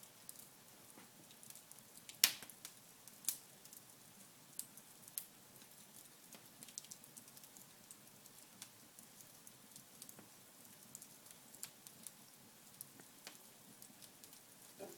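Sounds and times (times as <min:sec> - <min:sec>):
fireplace wood crackling: 0:00.0 - 0:14.9
sharp fire pops: 0:02.1 - 0:02.6.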